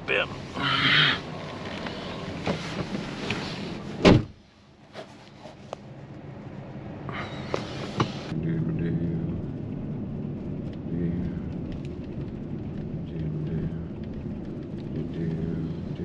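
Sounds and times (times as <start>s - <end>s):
vehicle engine low rumble: 0.0s - 16.0s.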